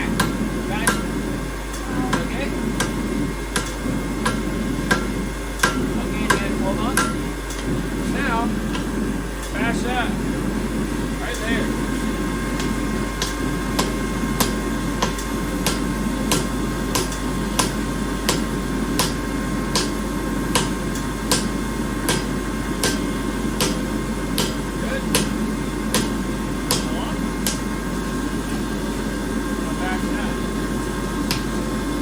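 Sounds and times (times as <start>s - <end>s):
steady running noise: 0.0s - 32.0s
hammer striking steel: 0.2s - 7.3s, 13.2s - 27.7s.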